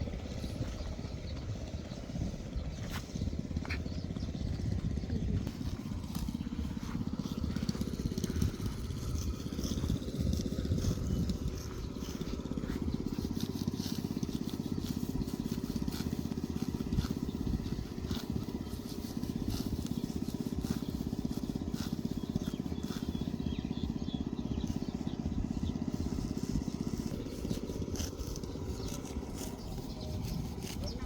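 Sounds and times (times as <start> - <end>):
small engine puttering: 0.0 - 31.0.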